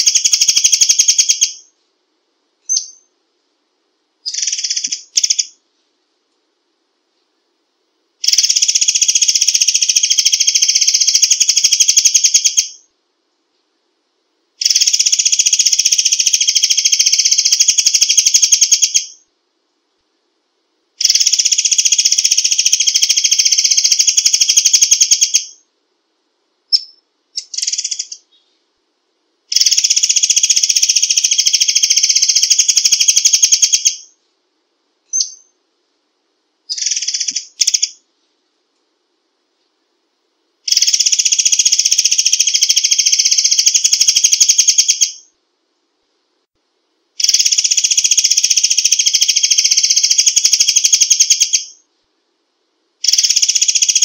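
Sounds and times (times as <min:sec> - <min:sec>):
songbird fast trills: 0:00.0 - 0:01.7, 0:02.7 - 0:03.1, 0:04.2 - 0:05.6, 0:08.2 - 0:12.8, 0:21.0 - 0:25.6, 0:29.5 - 0:34.2, 0:35.1 - 0:35.6, 0:40.7 - 0:45.3, 0:47.2 - 0:51.8, 0:53.0 - 0:54.0.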